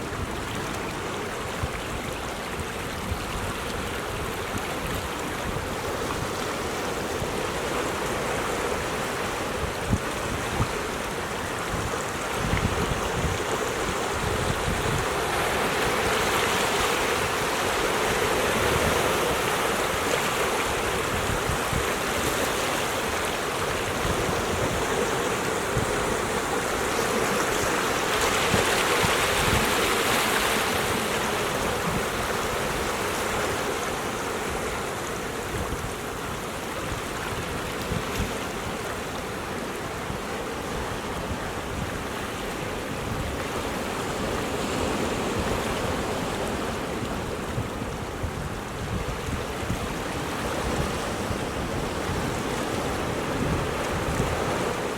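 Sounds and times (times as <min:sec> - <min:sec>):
waves breaking on rocky shore: 0:00.0 - 0:54.9.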